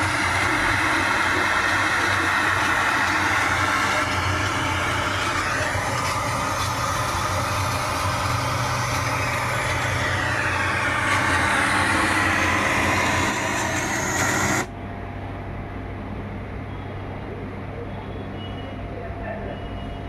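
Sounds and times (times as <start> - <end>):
dance music hissing sweep: 0.0 - 14.7.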